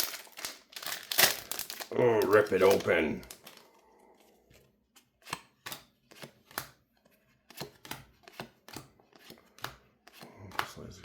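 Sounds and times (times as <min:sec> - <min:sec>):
trading cards clicking and snapping: 0:05.2 - 0:06.8, 0:07.4 - 0:10.9.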